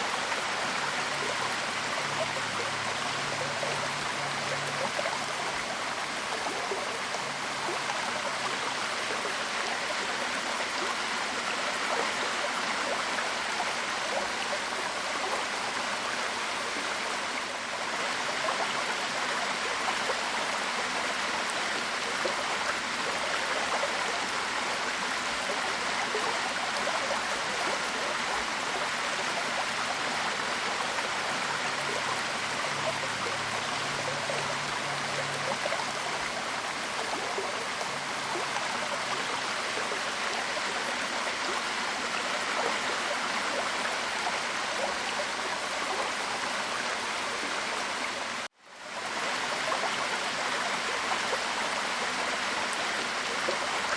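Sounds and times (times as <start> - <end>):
waterfall pouring and splashing: 0.0 - 53.9.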